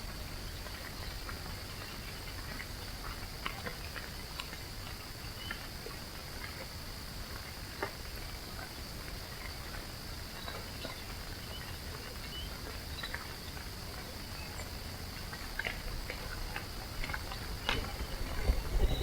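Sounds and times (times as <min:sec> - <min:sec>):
insect chorus: 0:00.0 - 0:19.0
low bumps and rustling: 0:17.0 - 0:19.0.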